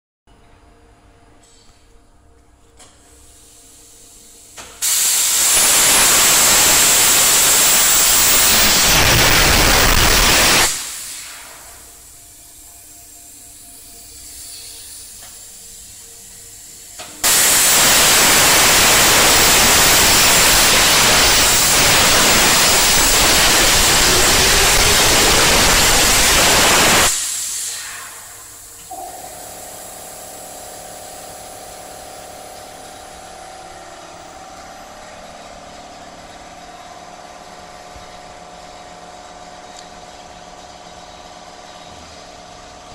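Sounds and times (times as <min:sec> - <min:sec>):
plasma torch cutting hiss: 0:03.1 - 0:33.3
machine hum: 0:05.6 - 0:42.9.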